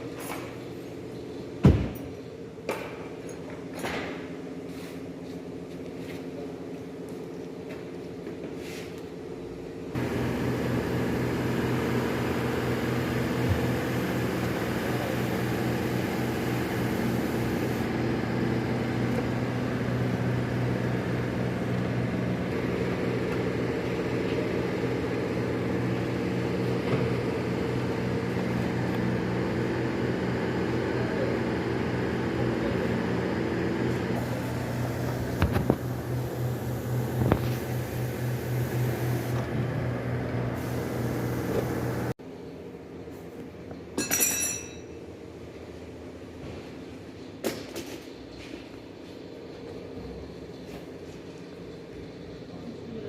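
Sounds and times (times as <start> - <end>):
machine humming: 9.9 - 42.2.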